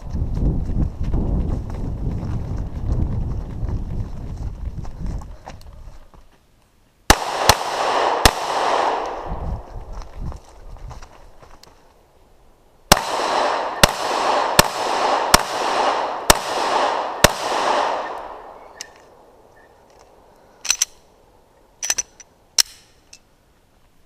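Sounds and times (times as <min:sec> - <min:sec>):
pistol shots echoing: 0:07.1 - 0:09.4, 0:12.9 - 0:18.8.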